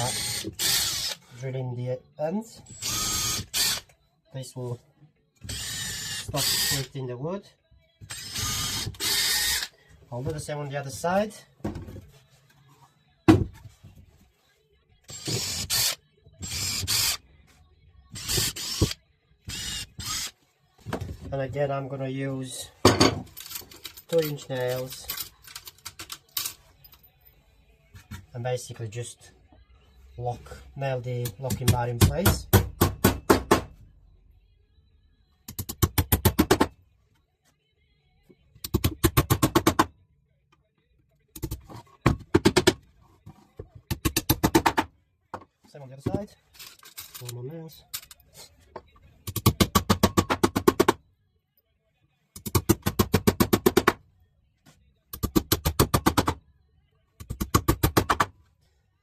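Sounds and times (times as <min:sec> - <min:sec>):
power drill boring into wood: 0:00.0 - 0:01.2, 0:02.8 - 0:03.8, 0:05.5 - 0:06.9, 0:08.1 - 0:09.7, 0:15.1 - 0:17.2.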